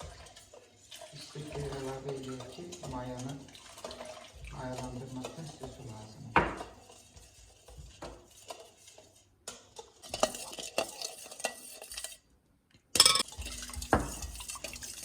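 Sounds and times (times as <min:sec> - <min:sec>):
spoon stirring liquid in bowl: 0:00.0 - 0:12.3, 0:12.9 - 0:15.0
spoon clinking against bowl: 0:13.0 - 0:13.4.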